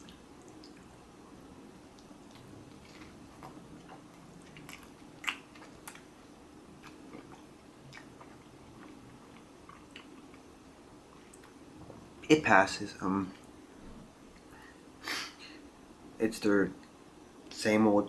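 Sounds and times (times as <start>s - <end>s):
person chewing food: 0.0s - 12.2s
mouth clicks: 2.0s - 6.1s.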